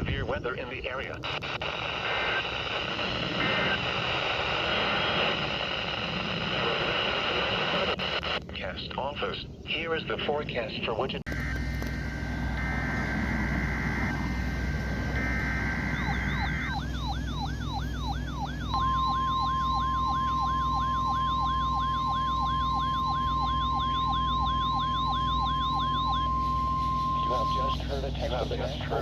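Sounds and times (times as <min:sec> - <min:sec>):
buzzy digital data tones: 0:11.3 - 0:29.0
steady warning alarm tone: 0:11.3 - 0:29.0
warbling siren tone: 0:11.3 - 0:29.0.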